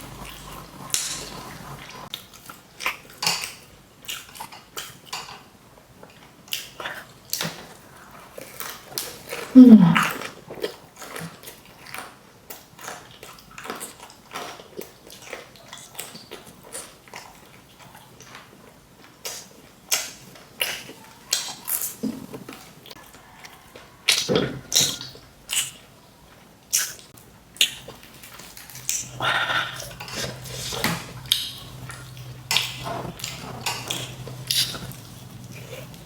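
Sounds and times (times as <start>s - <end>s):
crunching fried chicken: 26.7s - 36.0s.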